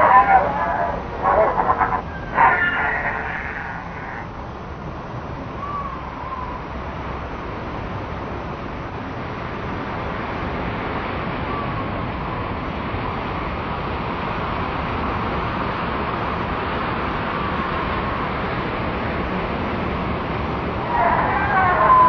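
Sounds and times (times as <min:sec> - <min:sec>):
slowed sea animal chattering: 0:00.0 - 0:04.3
faint wavering calls: 0:00.0 - 0:04.5, 0:05.5 - 0:06.8, 0:20.8 - 0:22.0.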